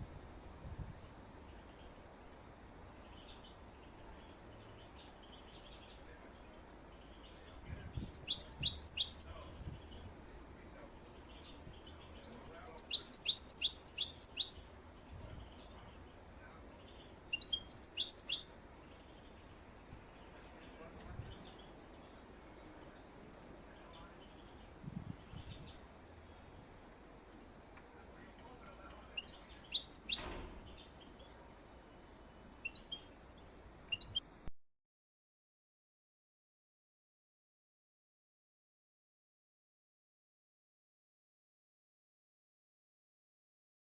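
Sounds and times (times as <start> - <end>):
faint steady hiss: 0.0 - 34.5
songbird singing: 0.0 - 34.5
faint bird chirps: 2.9 - 26.6, 27.3 - 34.4.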